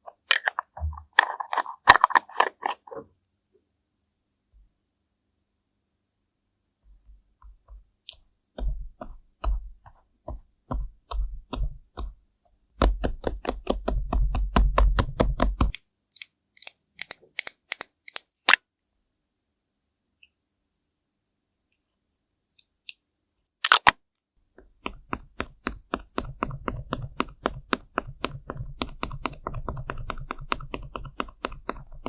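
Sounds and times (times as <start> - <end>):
sharp crisp clicks: 15.6 - 18.6.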